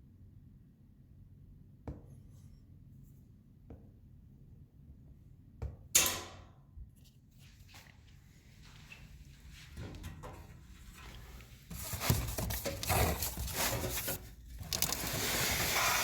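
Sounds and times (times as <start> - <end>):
soft footsteps: 7.3 - 12.6.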